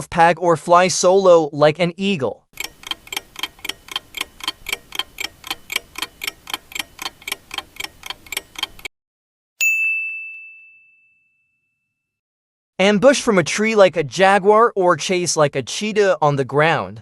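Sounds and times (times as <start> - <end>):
clock-like ticking: 2.6 - 8.9
bell ding: 9.6 - 12.1.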